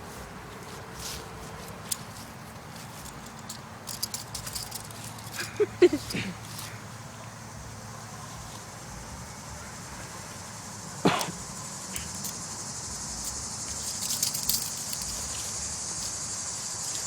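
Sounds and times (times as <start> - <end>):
crickets chirping: 0.0 - 17.0
metal clicks of handcuffs: 1.0 - 6.8, 11.2 - 12.6, 13.2 - 15.6.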